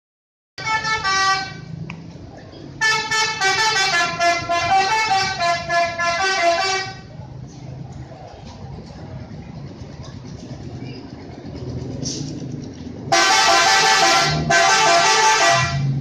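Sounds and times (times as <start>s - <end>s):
musical bus horn: 0.6s - 1.8s, 2.8s - 7.1s, 13.1s - 16.0s
low engine rumble: 0.6s - 16.0s.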